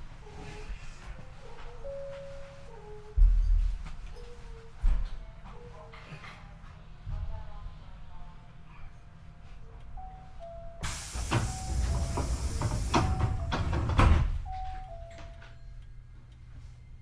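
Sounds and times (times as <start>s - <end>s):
low rumble inside train car: 10.0s - 15.6s
loud hissing clattering noise: 10.8s - 14.5s.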